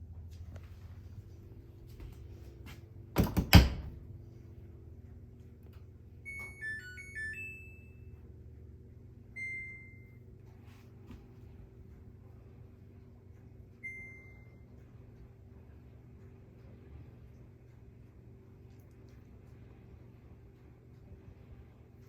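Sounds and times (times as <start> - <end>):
low steady hum: 0.0 - 22.0
door shutting thuds: 3.2 - 4.0
held beep: 6.2 - 8.1, 9.4 - 10.2, 13.8 - 14.6
washing machine chime melody: 6.2 - 8.5, 9.2 - 10.3, 13.8 - 14.8.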